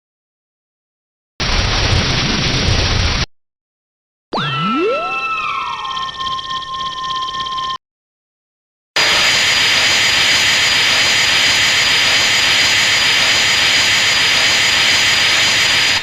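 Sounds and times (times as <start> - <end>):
energy beam sound effect: 4.4 - 6.8, 9.0 - 16.0.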